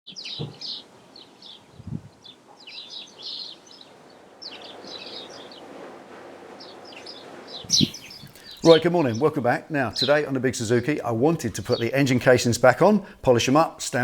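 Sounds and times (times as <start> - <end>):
small birds chirping: 0.1 - 5.8, 6.5 - 12.2
faint steady background noise: 0.1 - 14.0
soft low thump: 0.4 - 0.7.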